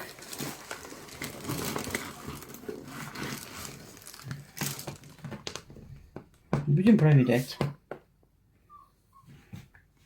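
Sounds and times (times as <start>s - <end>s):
plastic packaging crinkling: 0.0s - 5.8s.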